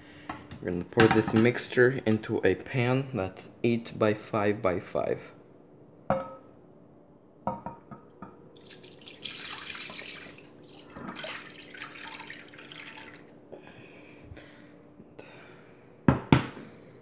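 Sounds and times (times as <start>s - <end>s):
liquid pouring into a pan: 8.5s - 13.4s.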